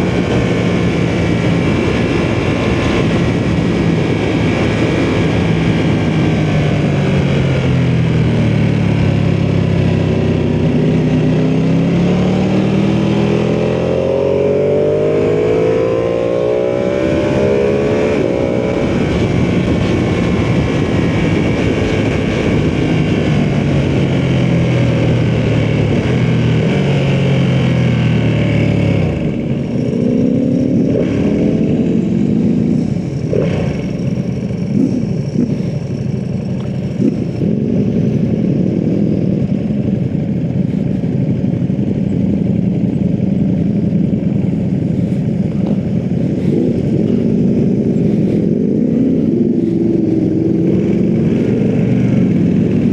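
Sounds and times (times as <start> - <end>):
motorcycle engine revving: 0.0 - 52.9.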